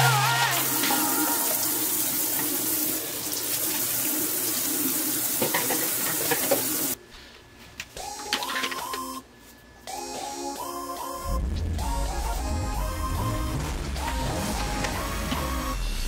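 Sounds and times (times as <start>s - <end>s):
faucet water running into sink: 0.4s - 7.0s.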